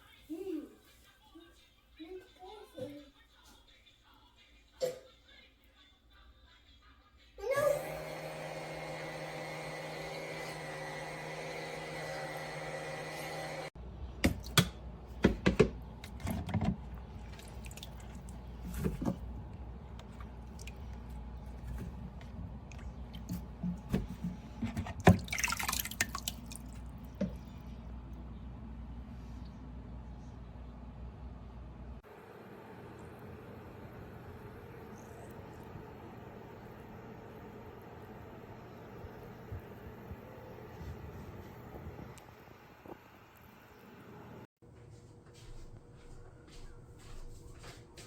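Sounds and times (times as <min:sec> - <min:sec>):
water dripping and splashing: 0:16.9 - 0:18.7, 0:20.0 - 0:21.8, 0:25.0 - 0:27.2.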